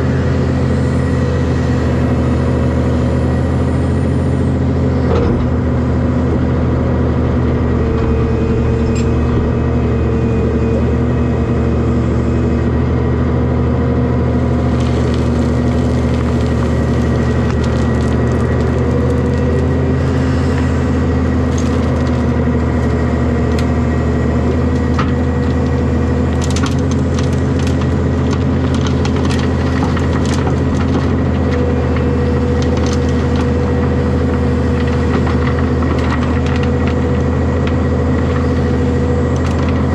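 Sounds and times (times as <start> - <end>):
heavy diesel engine running: 0.0 - 39.9
material loaded into dump truck: 14.4 - 39.9.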